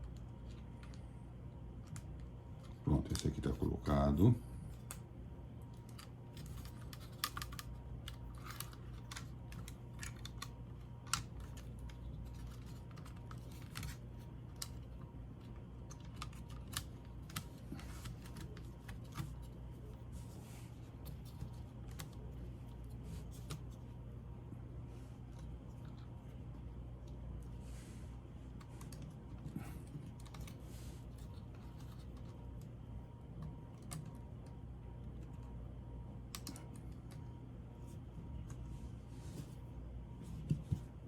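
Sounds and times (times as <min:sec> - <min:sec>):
steady low hum: 0:00.0 - 0:41.0
plastic laptop parts clicking: 0:05.7 - 0:19.5.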